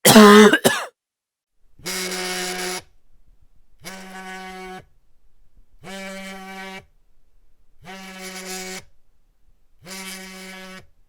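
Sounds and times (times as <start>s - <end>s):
man coughing: 0.0s - 0.9s.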